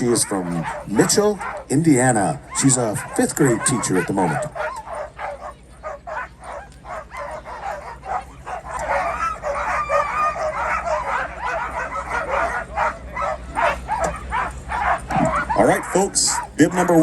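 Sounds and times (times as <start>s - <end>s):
dogs barking and yipping: 0.0s - 17.0s.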